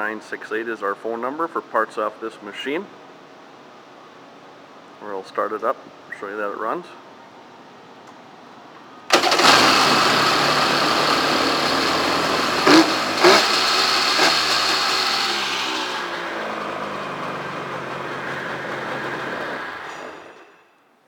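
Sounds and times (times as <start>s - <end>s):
two-stroke engine running: 9.1s - 19.9s.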